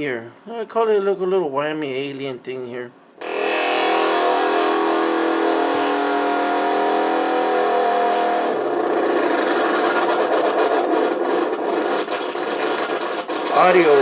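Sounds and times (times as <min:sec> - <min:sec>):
buzzy synthesized warble through radio: 0:03.2 - 0:14.0.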